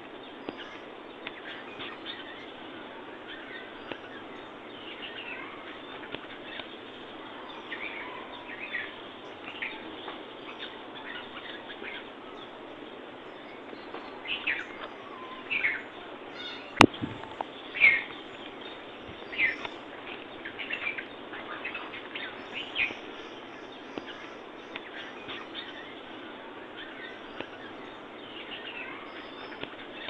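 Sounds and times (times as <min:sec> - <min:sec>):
birds chirping: 0:00.0 - 0:30.0
steady background hiss: 0:00.0 - 0:30.0.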